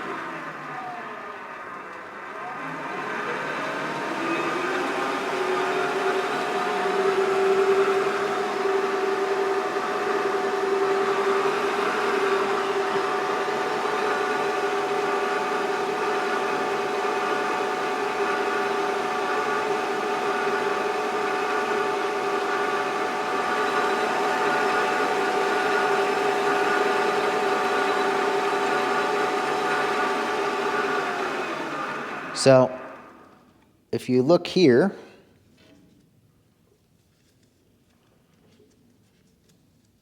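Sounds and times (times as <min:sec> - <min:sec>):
metal lathe whirring: 0:00.0 - 0:33.5.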